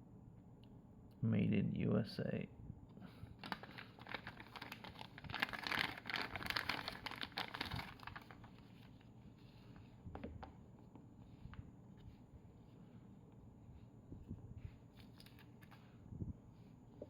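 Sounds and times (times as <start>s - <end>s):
packaging crinkling and rustling: 3.3s - 9.2s, 15.0s - 15.8s.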